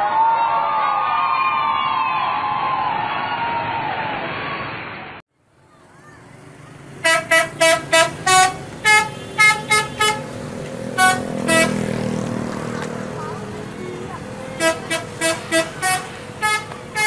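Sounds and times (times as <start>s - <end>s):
crowd cheering: 0.0s - 5.0s
bus horn playing a tune: 7.0s - 12.1s, 14.4s - 17.0s.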